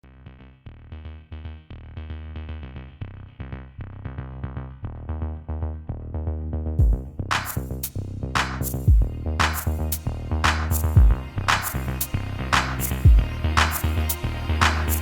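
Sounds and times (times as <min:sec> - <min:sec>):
electronic music with drum-machine beat: 0:06.8 - 0:15.0.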